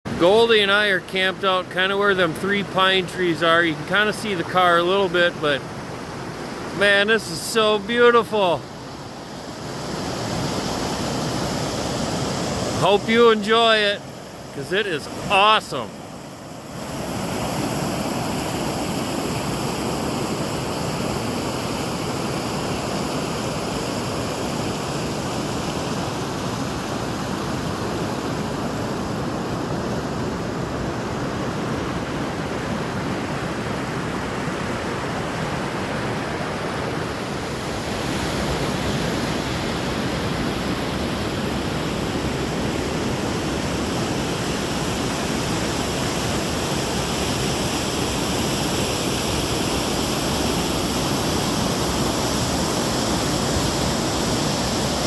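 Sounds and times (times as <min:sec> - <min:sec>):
rushing water: 0:00.1 - 0:55.0.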